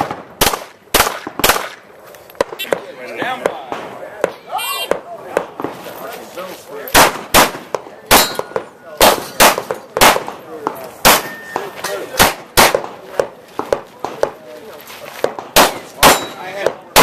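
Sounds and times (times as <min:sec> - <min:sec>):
pistol shots: 0:00.0 - 0:02.8, 0:06.9 - 0:14.4, 0:15.2 - 0:17.0
steel targets clanging: 0:08.1 - 0:09.9, 0:11.1 - 0:12.2, 0:16.0 - 0:16.5.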